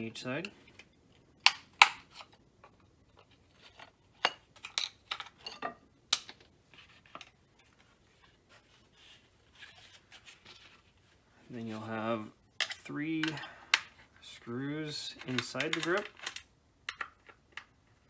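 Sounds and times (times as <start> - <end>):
plastic parts clicking: 0.4 - 5.5, 6.1 - 8.3, 12.6 - 14.1, 15.0 - 18.0
handling noise: 0.5 - 18.0.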